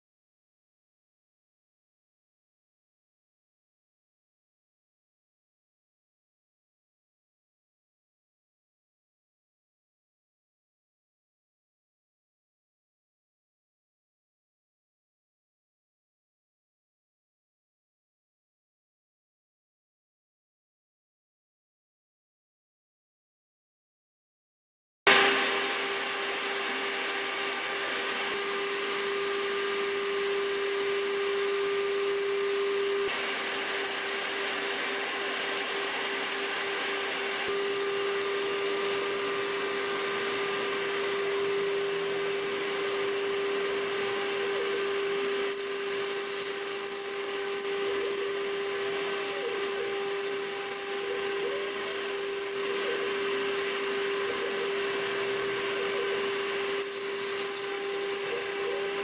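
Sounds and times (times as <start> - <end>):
router cutting noise: 25.1 - 59.0.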